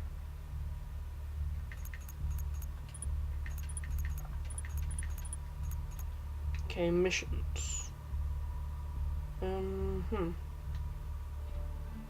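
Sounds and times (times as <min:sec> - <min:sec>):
steady low hum: 0:00.0 - 0:12.0
short sharp clicks: 0:01.7 - 0:06.7.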